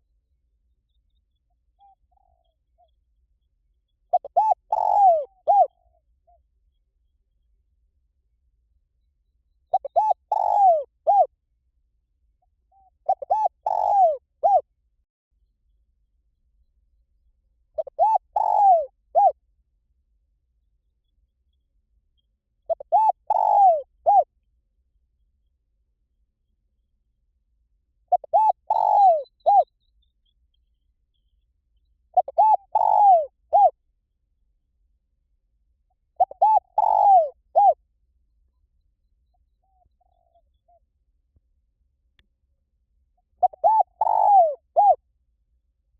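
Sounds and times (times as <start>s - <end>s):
dove cooing: 4.1s - 6.0s, 9.7s - 11.3s, 12.8s - 14.6s, 17.8s - 19.4s, 22.7s - 24.3s, 28.1s - 29.7s, 32.2s - 33.8s, 36.2s - 37.8s, 43.4s - 45.0s.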